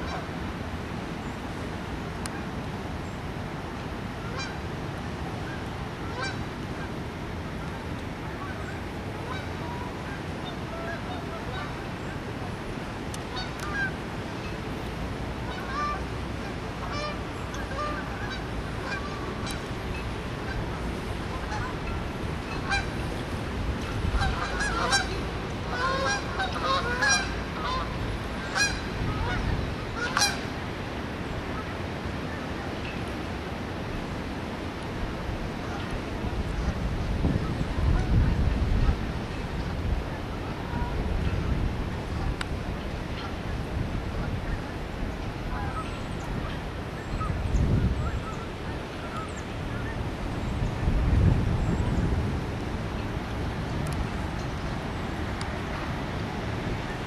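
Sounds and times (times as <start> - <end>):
geese honking: 0.0 - 0.2, 4.3 - 4.6, 6.1 - 6.4, 8.3 - 11.9, 13.3 - 14.0, 15.5 - 16.0, 16.8 - 23.0, 23.8 - 30.4, 45.4 - 47.3
steady rushing noise: 0.0 - 57.0.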